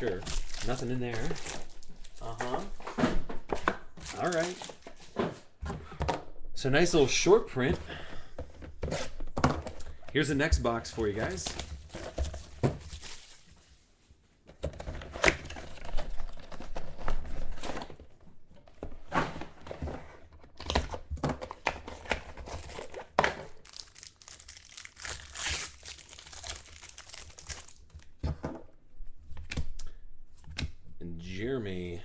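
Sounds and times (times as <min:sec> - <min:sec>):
wrapper tearing and crinkling: 0:00.0 - 0:02.7, 0:04.0 - 0:04.9, 0:12.9 - 0:13.5, 0:23.5 - 0:28.0.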